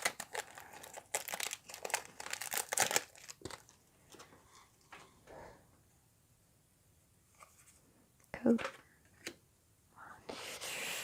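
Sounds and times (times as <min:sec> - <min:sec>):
foil wrapper crinkling: 0:00.0 - 0:03.8.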